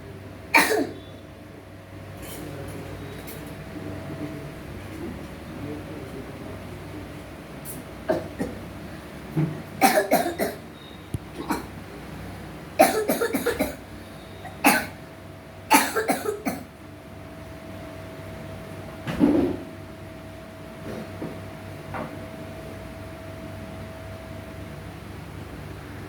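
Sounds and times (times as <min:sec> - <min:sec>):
boy coughing: 0:00.6 - 0:01.0, 0:08.1 - 0:08.6, 0:09.8 - 0:10.6, 0:11.4 - 0:11.7, 0:12.8 - 0:13.8, 0:14.6 - 0:15.0, 0:15.7 - 0:16.7.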